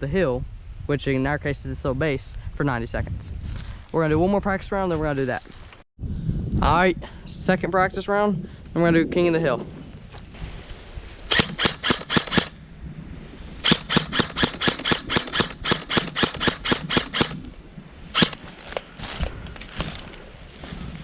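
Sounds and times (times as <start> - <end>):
airsoft gun shots: 11.3 - 12.5, 13.6 - 17.4.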